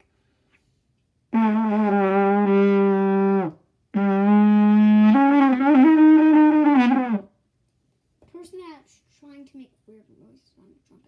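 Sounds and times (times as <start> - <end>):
trumpet long held notes: 1.3 - 7.3.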